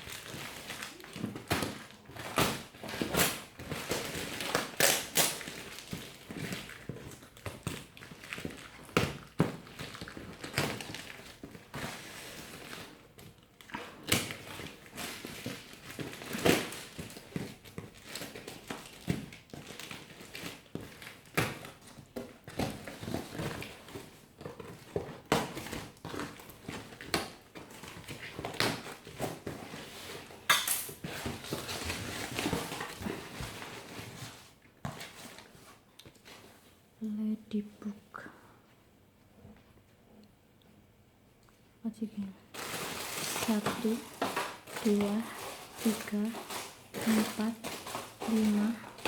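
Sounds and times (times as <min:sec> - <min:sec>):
packaging rustling and crinkling: 0:00.0 - 0:36.8, 0:42.5 - 0:49.0
hard items clacking and clinking: 0:42.6 - 0:49.0.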